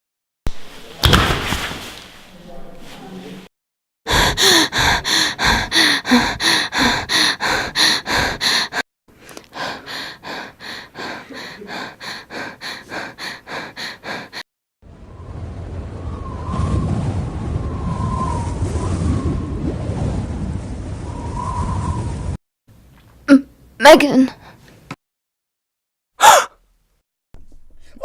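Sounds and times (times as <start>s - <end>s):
rapid rhythmic panting: 4.1s - 8.8s, 9.5s - 14.4s
rising rushing noise: 14.9s - 22.4s.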